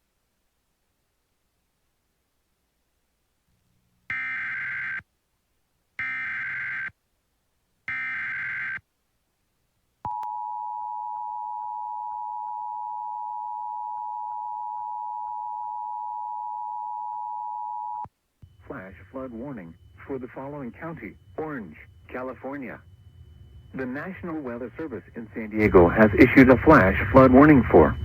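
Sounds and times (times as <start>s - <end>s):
warbling digital data bursts: 18.6s - 28.0s.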